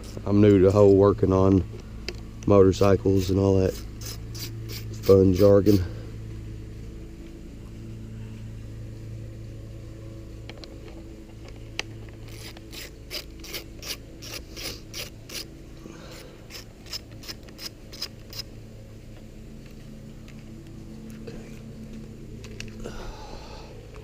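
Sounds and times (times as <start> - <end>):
hand ratchet clicking: 3.2 - 5.5, 12.2 - 15.5, 16.1 - 18.5.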